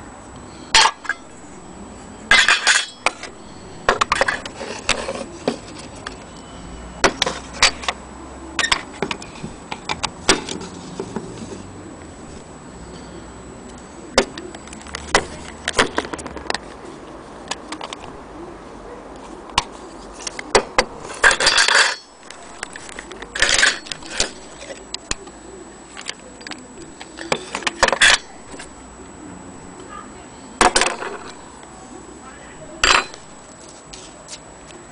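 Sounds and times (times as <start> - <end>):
metal parts rattling: 0.7 - 1.4, 2.3 - 6.2, 20.3 - 24.8, 26.4 - 28.7, 30.6 - 31.4, 32.8 - 33.4
small metal parts clicking: 2.3 - 5.1, 21.1 - 25.2.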